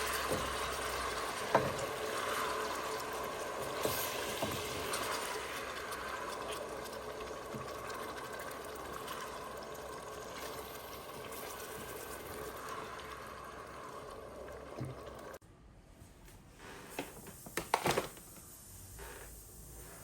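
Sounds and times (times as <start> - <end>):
tap water pouring into a pot: 0.0 - 15.4.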